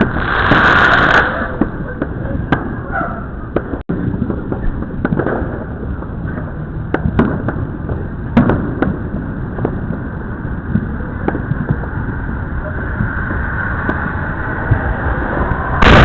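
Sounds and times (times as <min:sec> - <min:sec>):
firecracker pops and bangs: 0:00.0 - 0:12.3, 0:15.8 - 0:16.0
distant explosions rumbling: 0:00.0 - 0:16.0.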